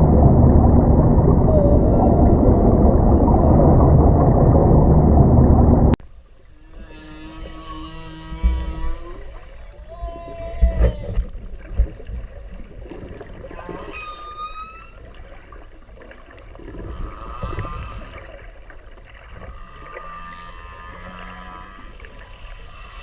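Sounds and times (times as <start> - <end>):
whale calls underwater: 0.0 - 5.9, 6.5 - 11.4, 13.0 - 23.0
loud low thumps: 0.0 - 6.0
watery background: 0.0 - 23.0.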